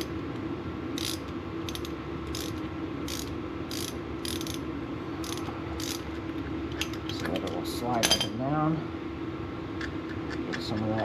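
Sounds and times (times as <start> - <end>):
ratchet wrench clicking: 1.0 - 4.6, 5.2 - 6.0.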